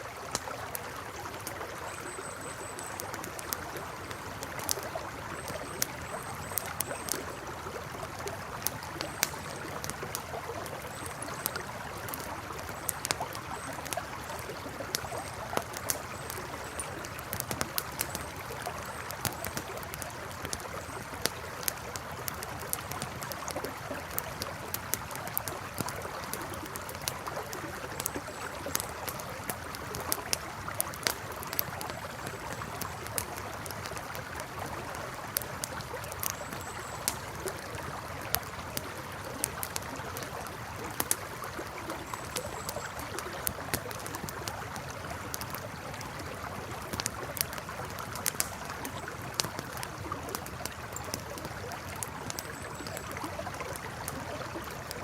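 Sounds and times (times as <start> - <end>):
campfire crackling and popping: 0.0 - 55.0
river flowing: 0.0 - 55.0.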